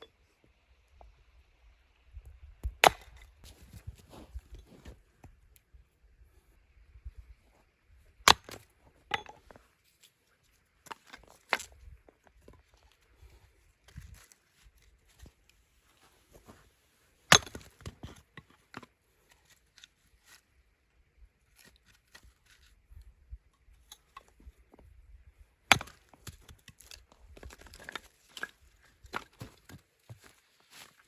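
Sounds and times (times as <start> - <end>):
axe chopping wood: 2.6 - 3.3, 8.3 - 9.4, 17.3 - 17.9, 25.7 - 26.5.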